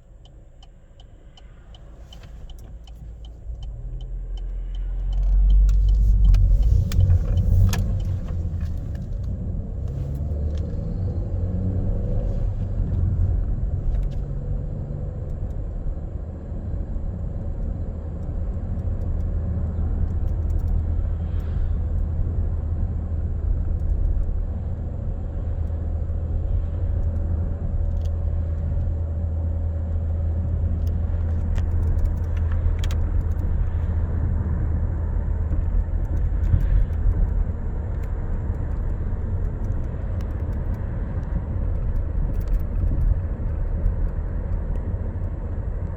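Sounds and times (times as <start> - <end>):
car engine idling: 1.2 - 14.4.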